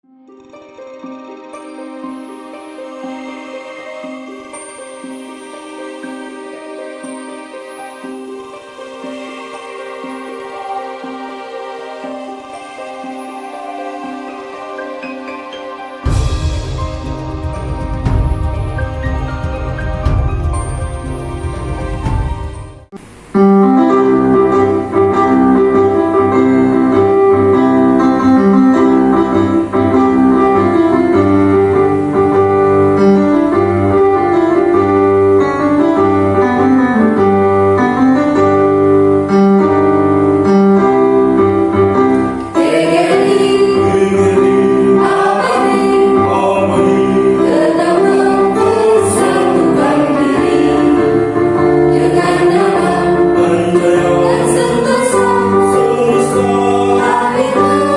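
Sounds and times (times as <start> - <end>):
children's choir singing: 42.4 - 57.9.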